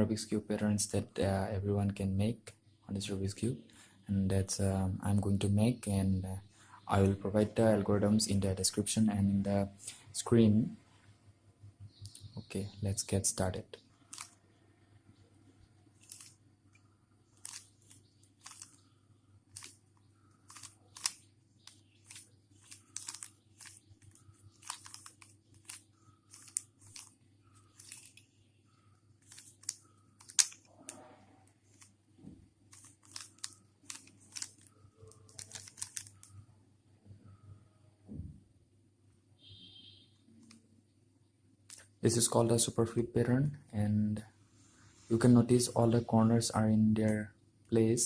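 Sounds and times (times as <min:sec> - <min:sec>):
plastic puzzle cube clicking: 0:14.1 - 0:14.4, 0:16.0 - 0:16.4, 0:17.4 - 0:18.9, 0:19.5 - 0:28.2, 0:29.2 - 0:31.0, 0:32.7 - 0:36.4.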